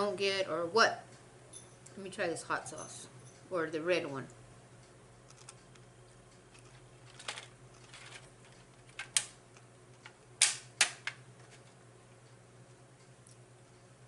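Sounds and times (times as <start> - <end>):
plastic clicks and crackles: 6.5 - 11.8.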